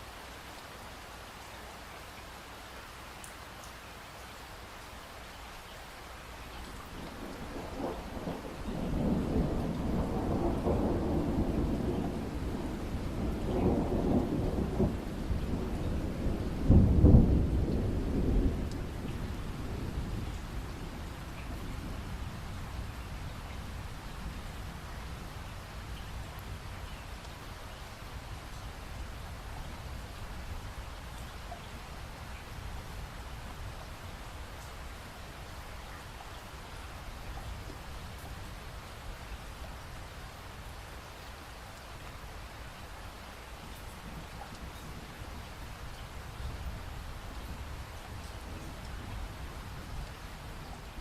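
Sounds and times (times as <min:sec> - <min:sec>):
steady rain: 0:00.0 - 0:51.0
thunder rumbling: 0:06.9 - 0:26.8.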